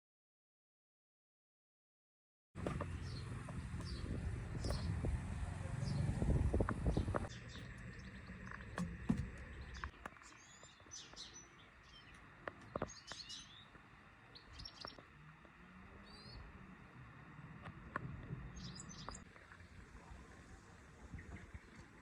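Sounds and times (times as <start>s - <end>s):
small birds chirping: 2.6s - 22.0s
faint knocks: 8.5s - 9.9s.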